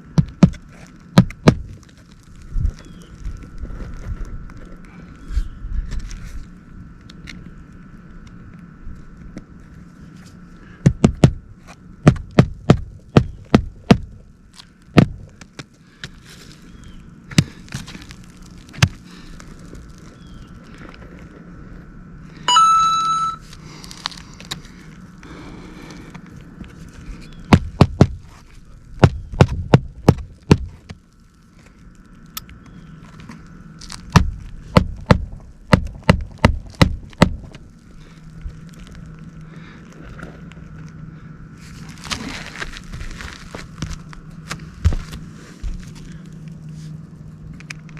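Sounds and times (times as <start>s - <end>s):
hammer driving nails into shingle: 10.8s - 11.4s, 12.0s - 14.2s, 29.0s - 30.7s, 34.1s - 37.4s.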